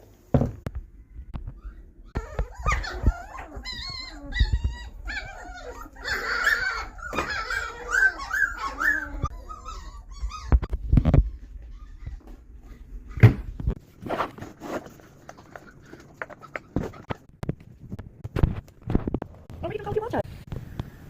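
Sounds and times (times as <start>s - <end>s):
puppies whining and yipping: 1.4s - 13.4s.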